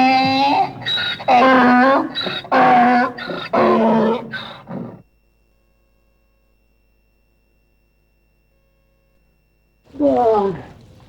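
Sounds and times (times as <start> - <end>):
loud falling pitched call: 0.0 - 4.9
faint steady hum: 0.0 - 11.0.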